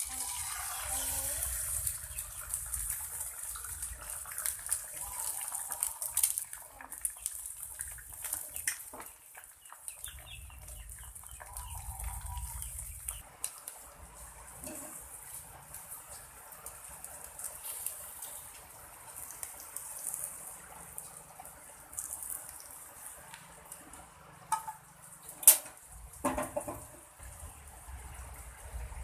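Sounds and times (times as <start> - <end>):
egg sizzling in a pan: 0.0 - 10.0, 11.4 - 23.2
chicken clucking: 8.4 - 13.2.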